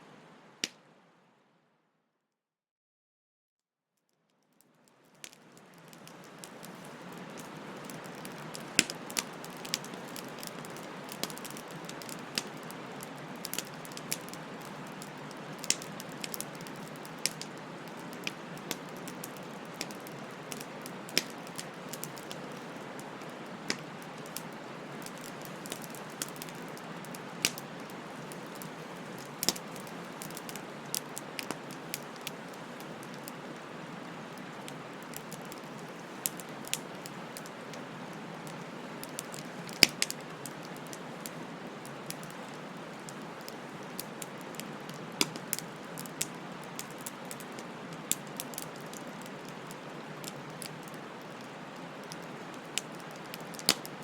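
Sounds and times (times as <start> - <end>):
bonfire crackling: 4.6 - 54.0.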